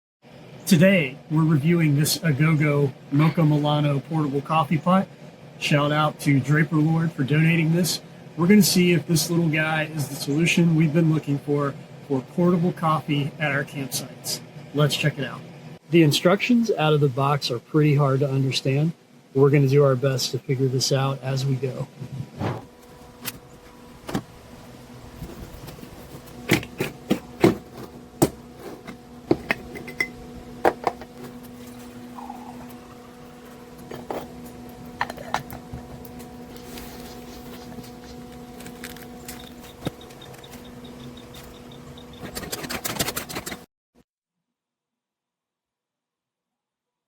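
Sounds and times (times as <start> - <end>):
steady low hum: 0.3 - 43.6
metal pot parts clinking: 29.4 - 30.2.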